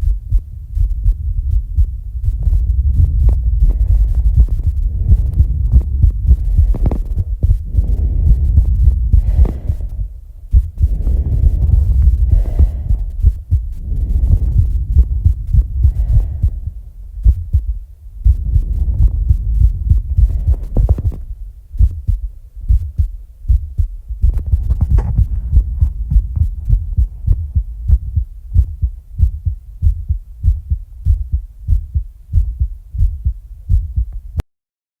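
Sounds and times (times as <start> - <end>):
fast heartbeat thumps: 0.0 - 34.4
heavy breathing: 2.4 - 22.0.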